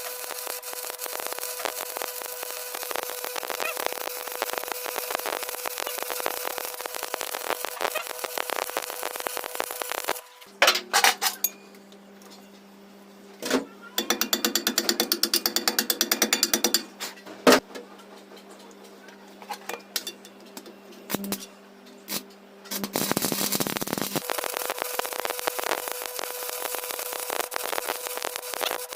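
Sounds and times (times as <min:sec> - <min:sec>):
machine hum: 0:00.0 - 0:10.6, 0:20.7 - 0:28.9.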